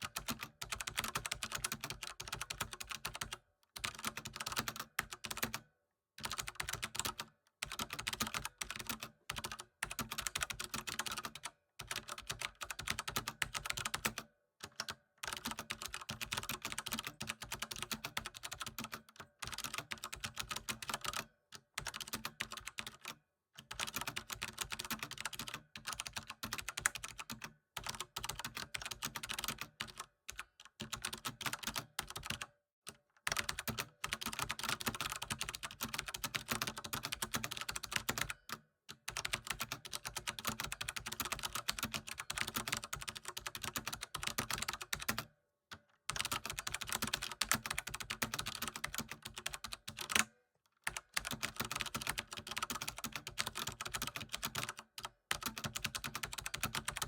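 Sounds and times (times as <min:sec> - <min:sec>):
typing on a keyboard: 0:00.0 - 0:57.0.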